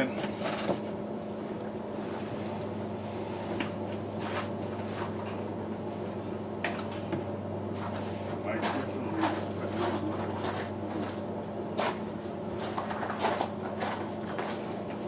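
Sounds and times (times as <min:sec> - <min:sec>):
low electrical hum: 0:00.0 - 0:15.0.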